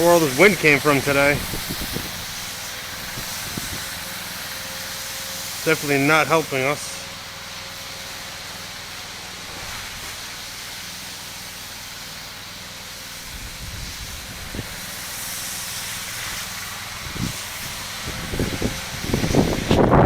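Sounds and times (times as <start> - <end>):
pressure washer engine hum: 0.0 - 20.0
water spray hissing: 0.0 - 20.0
wind buffeting microphone: 0.6 - 3.9, 13.2 - 14.9, 17.0 - 20.0.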